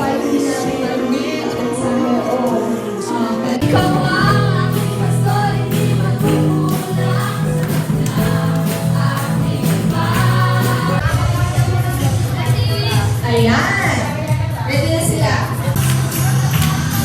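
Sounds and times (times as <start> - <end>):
group of voices singing: 0.0 - 13.3, 15.4 - 17.0
regular percussive beat: 3.6 - 11.0
sustained bass notes: 3.6 - 11.0.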